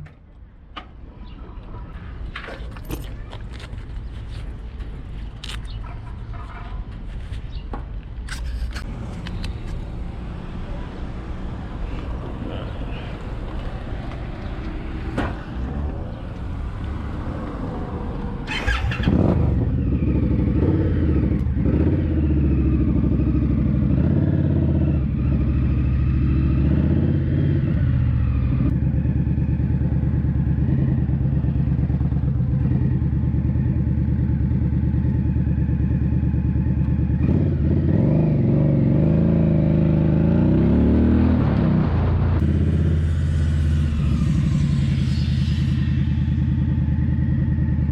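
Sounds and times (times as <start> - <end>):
motorcycle engine starting and running: 13.3 - 47.9.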